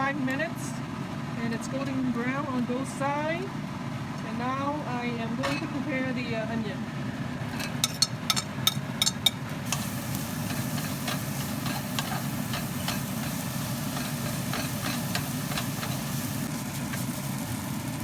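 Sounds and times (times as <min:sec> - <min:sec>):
steady low hum: 0:00.0 - 0:18.0
onion sizzling in oil: 0:07.4 - 0:18.0
spatula clicking on pan: 0:07.6 - 0:16.2.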